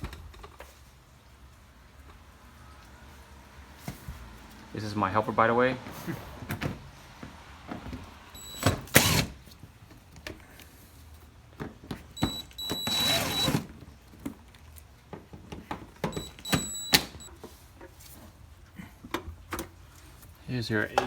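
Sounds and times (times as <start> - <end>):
small power tool whirring: 8.4 - 9.4, 12.2 - 13.6, 16.2 - 17.3.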